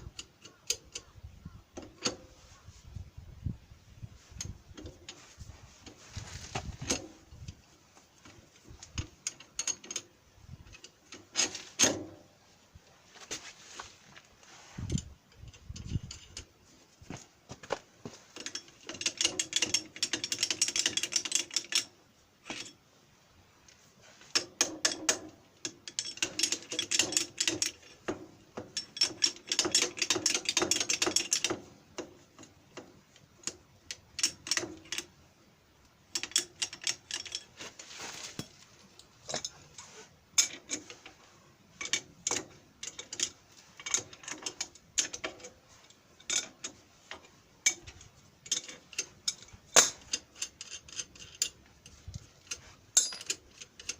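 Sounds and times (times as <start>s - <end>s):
metal clicks and taps: 0.1s - 1.1s, 18.4s - 21.9s, 24.4s - 35.1s, 35.8s - 37.5s, 41.8s - 45.5s, 46.2s - 53.9s.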